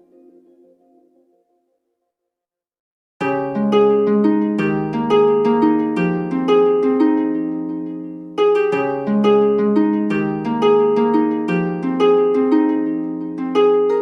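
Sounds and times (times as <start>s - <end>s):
plucked harp-like notes: 3.2s - 14.0s.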